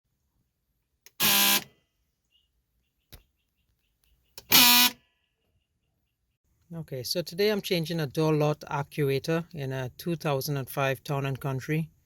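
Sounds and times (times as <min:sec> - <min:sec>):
vehicle horn blasts: 0:01.2 - 0:01.7, 0:04.5 - 0:05.0.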